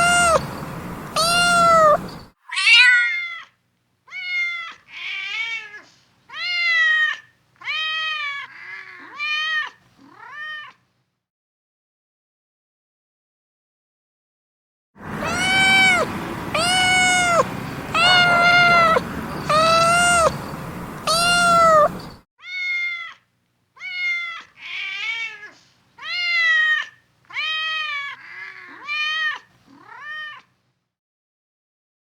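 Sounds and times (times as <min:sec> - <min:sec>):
steady background hiss: 0:00.0 - 0:02.3
cat meowing: 0:00.0 - 0:03.5, 0:04.1 - 0:10.8, 0:15.1 - 0:23.2, 0:23.8 - 0:30.5.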